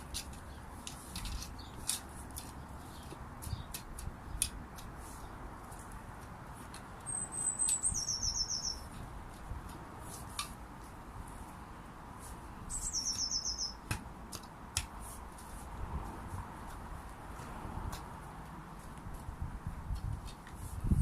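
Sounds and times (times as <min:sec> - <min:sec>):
songbird singing trill: 0:07.0 - 0:09.0, 0:12.7 - 0:13.9.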